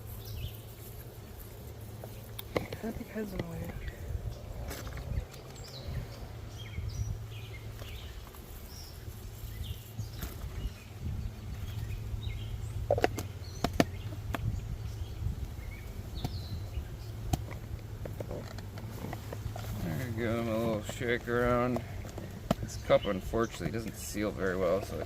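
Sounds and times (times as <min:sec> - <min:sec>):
bees humming: 0:00.0 - 0:25.0
bird chirps: 0:03.3 - 0:17.6.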